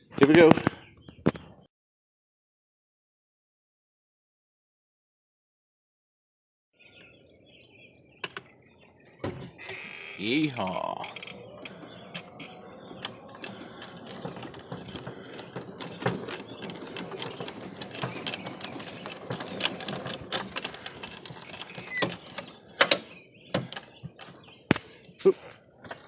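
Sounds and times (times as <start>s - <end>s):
golf cart rattling over rough ground: 6.8s - 26.0s.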